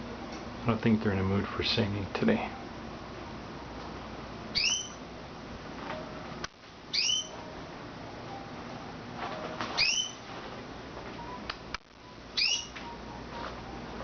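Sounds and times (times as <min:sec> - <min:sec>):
canaries chirping: 0:04.5 - 0:05.0, 0:06.9 - 0:07.4, 0:09.8 - 0:10.2, 0:12.4 - 0:12.9.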